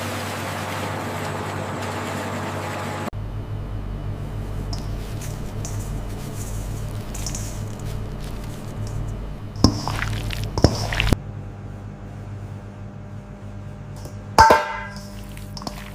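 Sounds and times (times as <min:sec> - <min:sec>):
low machinery hum: 0:00.0 - 0:15.9
soft wet clicks and squishing: 0:06.6 - 0:11.2.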